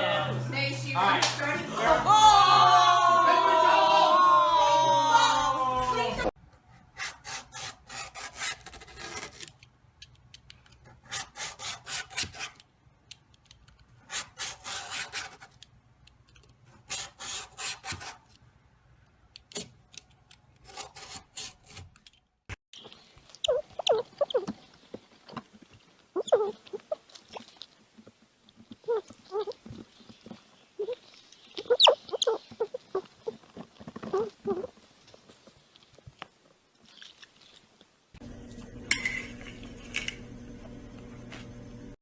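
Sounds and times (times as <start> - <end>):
rasping scraping strokes: 6.7 - 9.5, 10.9 - 12.6, 14.0 - 15.6, 16.7 - 18.4
animal cries and clicks: 22.8 - 25.4, 26.0 - 27.8, 28.5 - 34.8.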